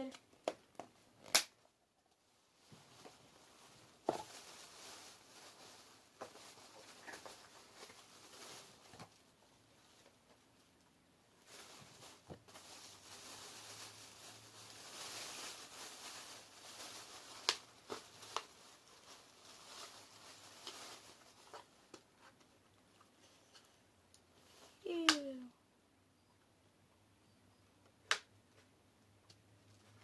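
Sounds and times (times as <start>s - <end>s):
rustling plastic craft supplies: 2.1s - 10.6s, 11.4s - 25.4s.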